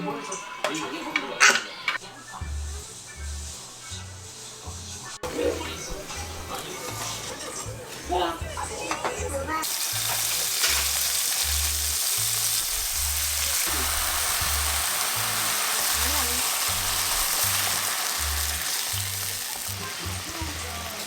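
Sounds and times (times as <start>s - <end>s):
food sizzling in a pan: 0.0s - 21.0s
background music with bass line: 2.1s - 21.0s.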